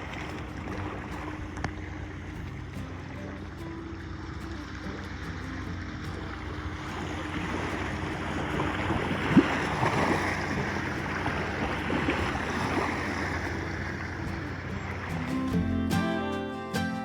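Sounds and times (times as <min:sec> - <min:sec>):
water splashing around kayak: 0:00.0 - 0:15.9.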